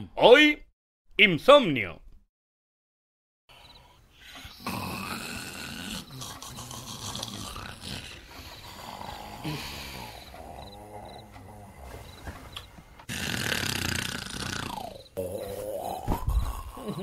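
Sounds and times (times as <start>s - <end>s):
exaggerated comic snoring: 3.5s - 12.3s, 13.0s - 17.0s.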